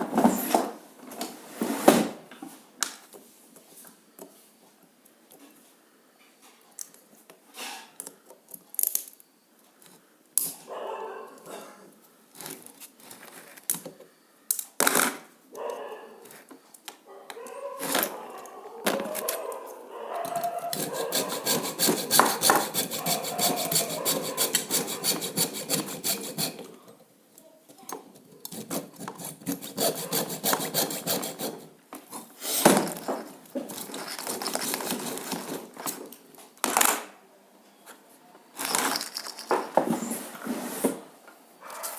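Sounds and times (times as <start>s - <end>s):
hand saw cutting: 20.3s - 26.8s, 28.4s - 31.7s, 33.7s - 35.8s.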